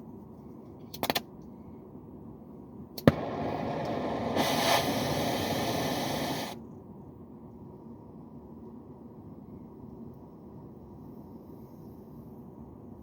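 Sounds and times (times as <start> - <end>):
gas torch flame hissing: 3.0 - 6.6
igniter clicks: 3.0 - 6.6.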